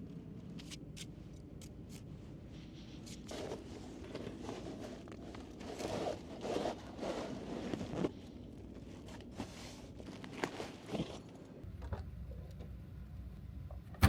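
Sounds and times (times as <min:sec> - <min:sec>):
camping gear rustling and scraping: 0:02.5 - 0:12.7.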